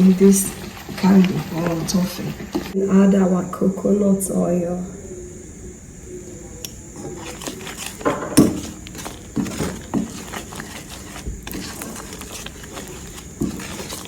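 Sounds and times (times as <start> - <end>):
spoon scraping a pot: 0.0 - 2.8, 7.0 - 14.0.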